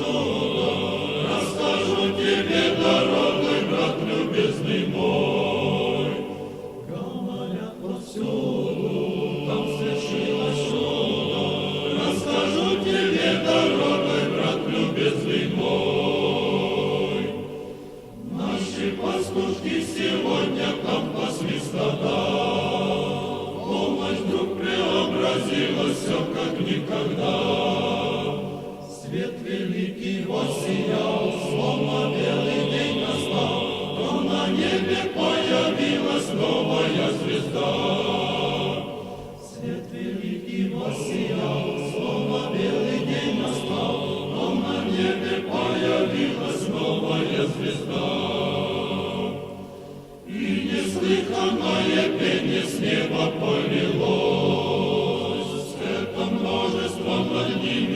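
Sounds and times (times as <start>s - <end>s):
choir chanting: 0.0s - 57.9s
singers breathing: 17.5s - 18.2s.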